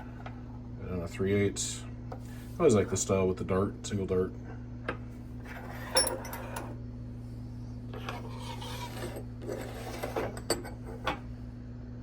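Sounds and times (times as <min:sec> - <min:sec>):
steady low hum: 0:00.0 - 0:12.0
metal wrenches clinking: 0:05.8 - 0:06.7
wrench scraping: 0:08.0 - 0:10.6.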